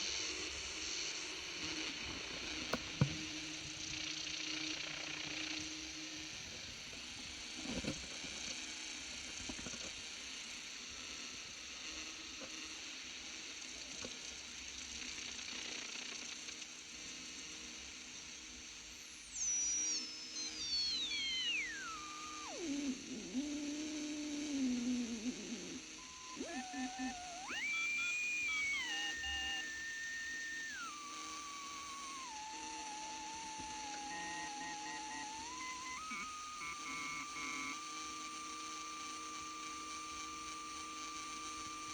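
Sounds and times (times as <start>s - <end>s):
radio static hiss: 0.0s - 10.0s, 19.1s - 41.9s
radio static crackles: 0.8s - 4.5s, 19.5s - 41.9s.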